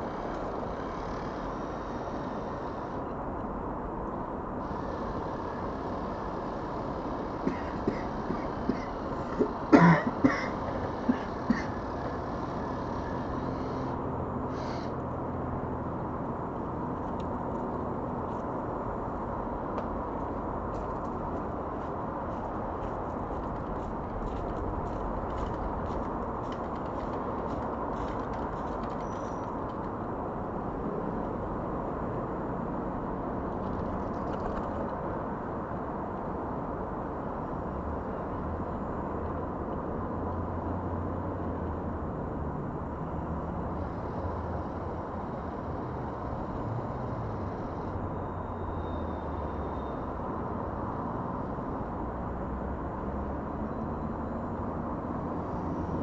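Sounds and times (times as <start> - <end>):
outdoor background rumble: 0.0 - 56.0
cough-like burst: 7.4 - 11.8.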